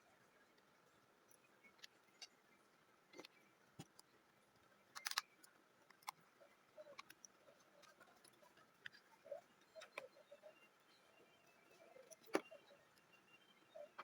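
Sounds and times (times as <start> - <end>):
small parts clicking: 4.9 - 6.2.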